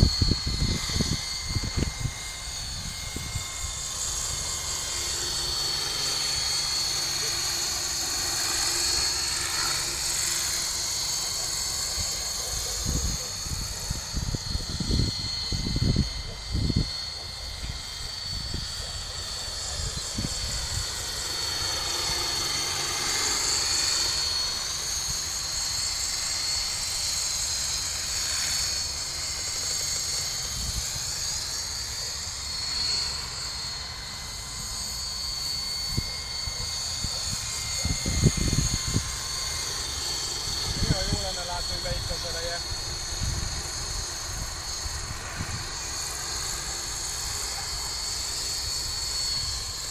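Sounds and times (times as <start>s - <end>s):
wind rumble on microphone: 0.0s - 3.8s, 11.9s - 17.0s, 19.7s - 20.9s, 30.5s - 31.0s, 37.0s - 39.2s, 40.5s - 45.9s
model helicopter motor whine: 0.0s - 49.9s
rotor whoosh: 0.0s - 49.9s.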